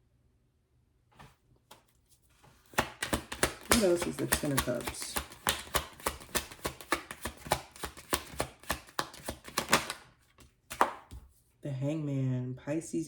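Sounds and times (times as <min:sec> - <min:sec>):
cards being shuffled: 0:01.2 - 0:11.4.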